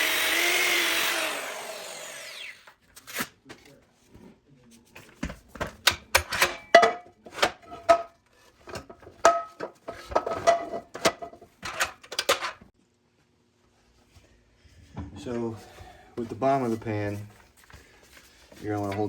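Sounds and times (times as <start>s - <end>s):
cast iron skillet clanking: 8.8s - 12.5s.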